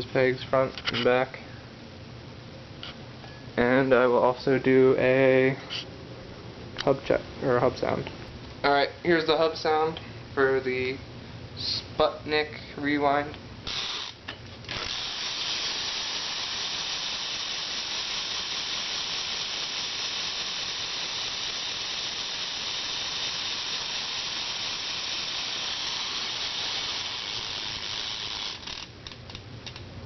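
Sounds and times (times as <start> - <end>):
bicycle hub freewheel clicking: 13.6 - 29.8.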